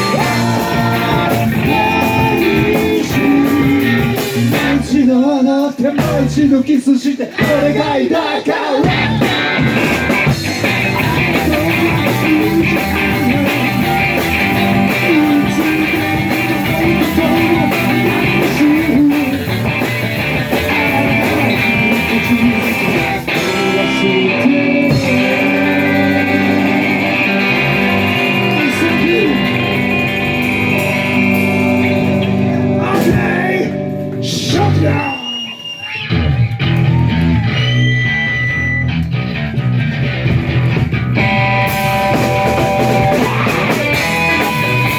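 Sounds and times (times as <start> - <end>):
live rock band playing: 0.0 - 44.9
sliding electric guitar notes: 9.2 - 34.8.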